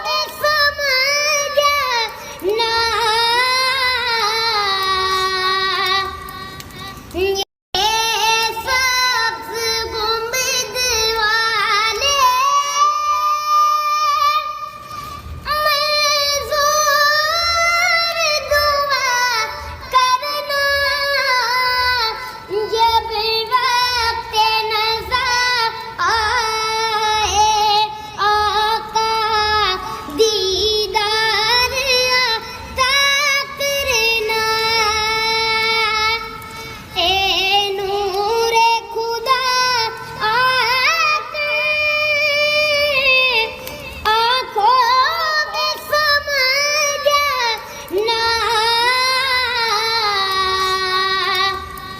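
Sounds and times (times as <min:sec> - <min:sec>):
female voice singing: 0:15.4 - 0:51.8.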